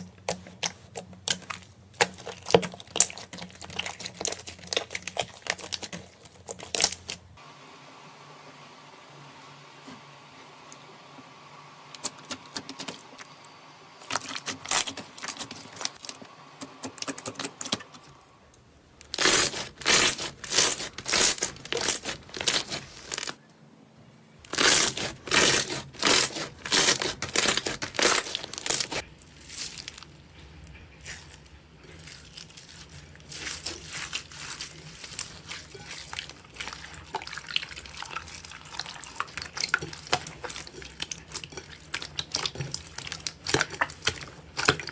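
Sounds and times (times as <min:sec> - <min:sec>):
slime crackling and popping: 0:00.0 - 0:07.3, 0:19.0 - 0:23.4, 0:24.5 - 0:30.2, 0:32.0 - 0:44.9.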